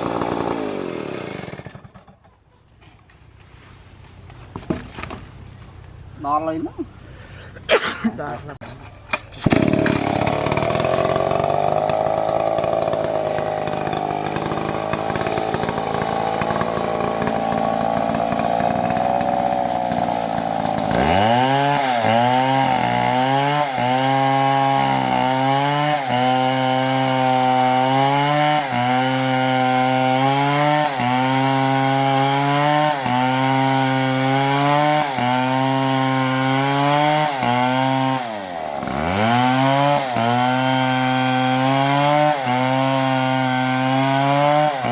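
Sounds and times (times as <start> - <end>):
chainsaw cutting into a tree: 0.0 - 2.2, 9.3 - 44.9.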